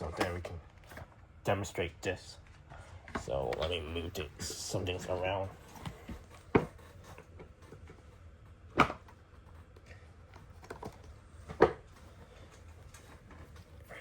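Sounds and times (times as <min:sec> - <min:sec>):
small clicks and rustling: 0:05.7 - 0:13.9.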